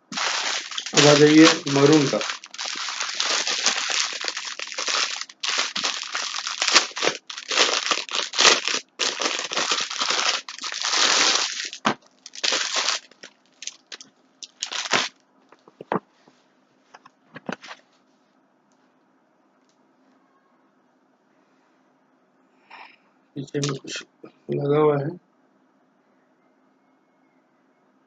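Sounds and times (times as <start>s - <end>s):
plastic packaging crinkling: 0.0s - 15.2s, 23.5s - 24.0s.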